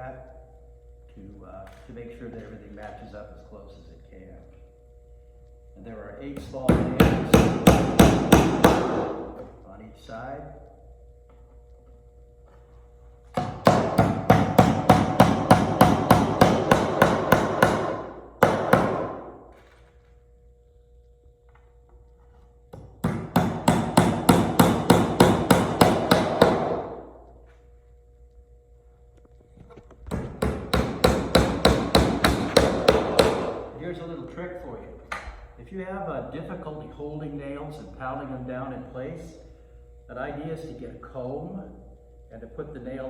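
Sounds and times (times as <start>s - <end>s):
hammer tapping nails into wood: 6.4s - 9.1s, 13.4s - 19.2s, 22.8s - 26.9s, 30.1s - 33.6s.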